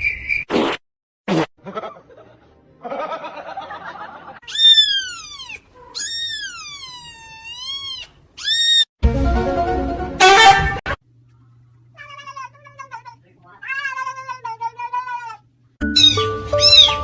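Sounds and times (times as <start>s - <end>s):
cat meowing: 4.4s - 8.8s, 12.0s - 17.0s
music: 9.0s - 10.8s, 15.8s - 17.0s.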